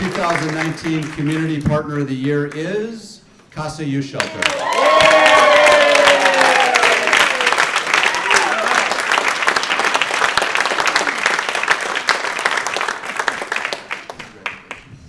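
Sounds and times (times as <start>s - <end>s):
audience applauding: 0.0s - 1.6s, 4.2s - 14.9s.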